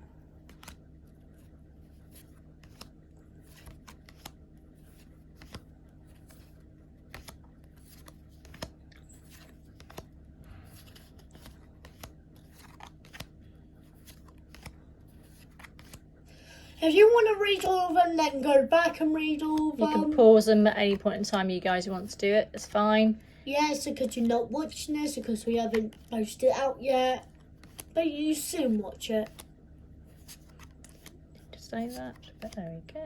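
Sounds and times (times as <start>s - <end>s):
low steady hum: 0.0s - 33.0s
trading cards clicking and sliding: 0.4s - 0.8s, 1.4s - 16.0s, 23.7s - 29.5s, 30.1s - 32.7s.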